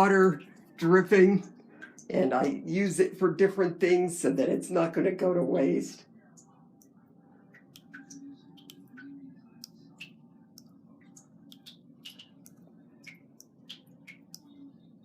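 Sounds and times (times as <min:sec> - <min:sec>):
water dripping from a tap: 0:00.0 - 0:03.2, 0:06.2 - 0:15.0
faint low hum: 0:00.0 - 0:15.0.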